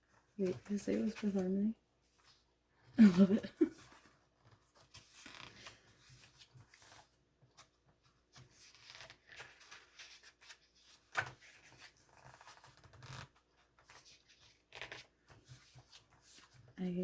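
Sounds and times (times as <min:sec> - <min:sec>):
paper pages rustling: 0:00.1 - 0:16.8
page flipping: 0:04.0 - 0:16.7.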